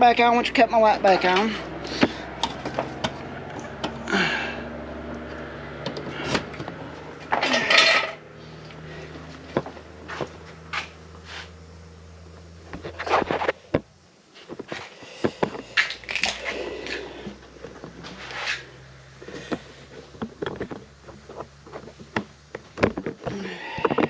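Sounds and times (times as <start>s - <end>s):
low machine hum: 0.0s - 24.0s
metal tools clanking and scraping: 5.9s - 8.7s.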